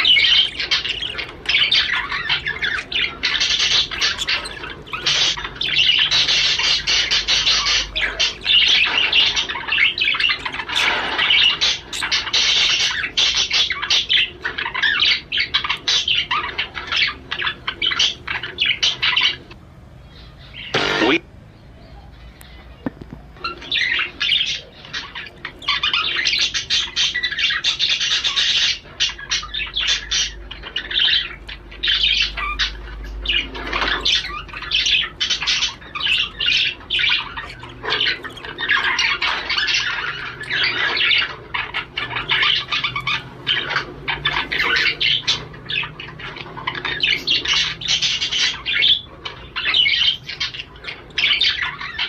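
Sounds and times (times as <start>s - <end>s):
budgerigar chattering and warbling: 0.0s - 21.2s, 22.0s - 52.0s.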